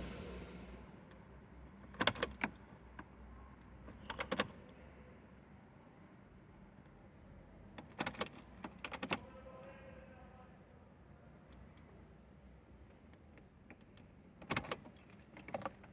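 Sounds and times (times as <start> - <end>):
car keys jangling: 4.0 - 4.7, 7.8 - 9.3, 13.1 - 15.9.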